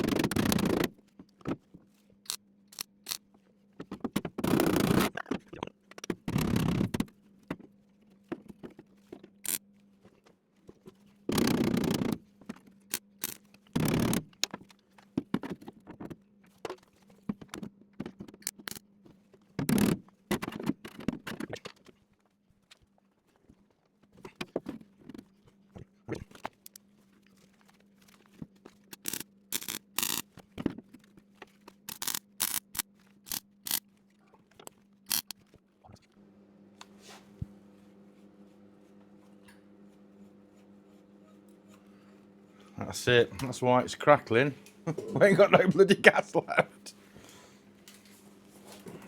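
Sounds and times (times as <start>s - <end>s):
welder crackling bursts: 29.0s - 30.2s
steady low hum: 31.8s - 49.0s.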